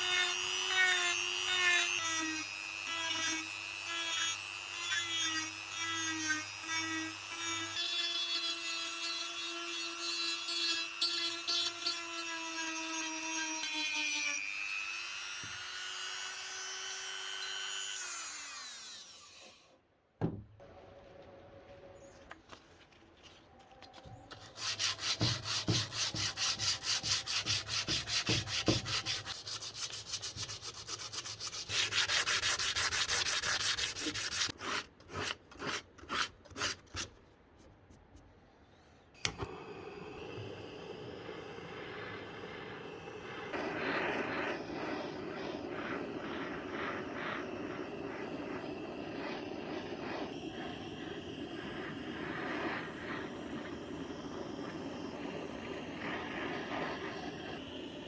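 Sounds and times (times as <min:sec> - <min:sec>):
rubbing strokes on wood: 0:24.3 - 0:34.6.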